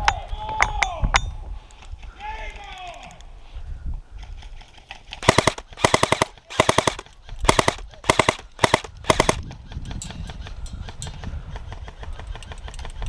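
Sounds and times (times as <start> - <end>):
airsoft rifle full-auto bursts: 5.2 - 9.4.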